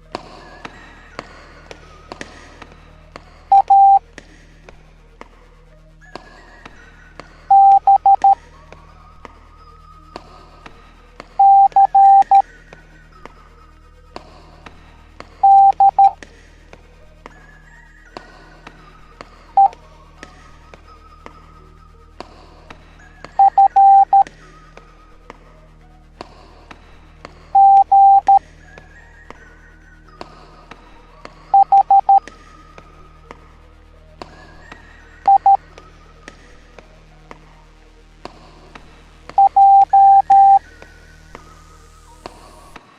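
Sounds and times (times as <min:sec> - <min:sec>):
background music: 0:00.0 - 0:42.9
morse code beeps: 0:03.5 - 0:04.0, 0:07.5 - 0:08.4, 0:11.4 - 0:12.4, 0:15.4 - 0:16.2, 0:23.4 - 0:24.3, 0:27.6 - 0:28.4, 0:31.6 - 0:32.2, 0:35.3 - 0:35.6, 0:39.4 - 0:40.6.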